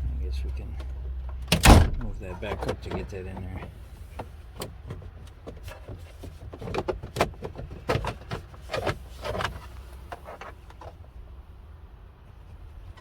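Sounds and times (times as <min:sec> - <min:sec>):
steady low hum: 0:00.0 - 0:04.2.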